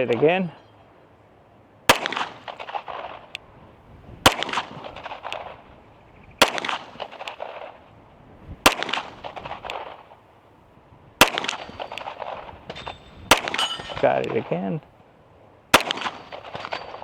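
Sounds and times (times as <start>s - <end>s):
pistol shots with echoes: 1.9s - 3.3s, 4.2s - 5.6s, 6.4s - 7.8s, 8.6s - 10.0s, 11.2s - 14.6s, 15.7s - 17.0s.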